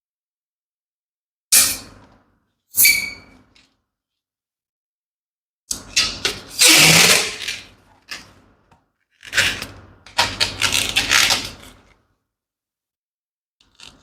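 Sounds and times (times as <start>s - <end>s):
balloon rubber squeaking: 6.6s - 7.6s.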